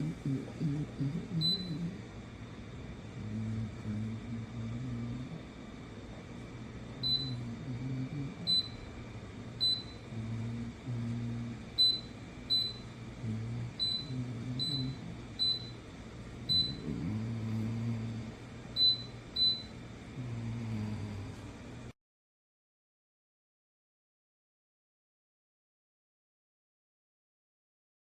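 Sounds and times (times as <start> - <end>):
low hum: 0.0 - 21.5
short electronic beeps: 7.0 - 7.4, 9.6 - 10.0, 11.8 - 12.9, 16.5 - 16.8.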